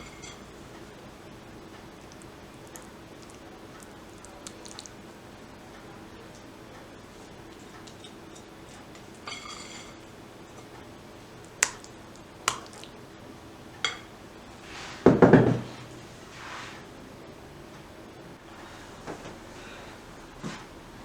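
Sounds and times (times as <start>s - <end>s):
dish clattering down: 9.2s - 10.0s.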